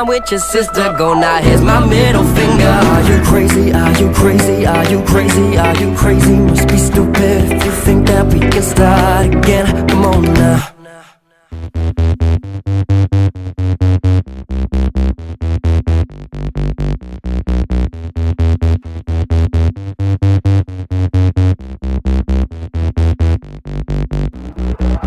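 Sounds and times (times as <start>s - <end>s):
electronic dance music: 0.0s - 10.7s, 24.3s - 25.0s.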